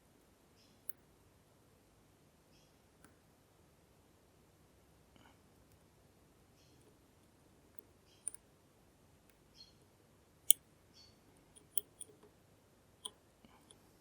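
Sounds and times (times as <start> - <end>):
lock pick clicks: 11.6 - 12.1
lock picks scraping: 11.6 - 12.1.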